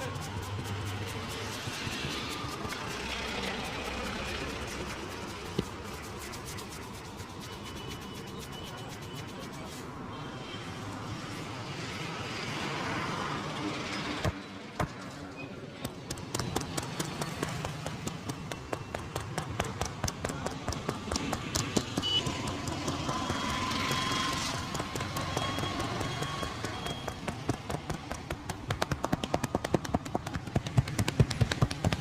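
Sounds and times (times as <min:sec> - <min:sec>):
street traffic noise: 0:00.0 - 0:32.0
rhythmic massage taps: 0:00.1 - 0:09.4, 0:15.8 - 0:32.0.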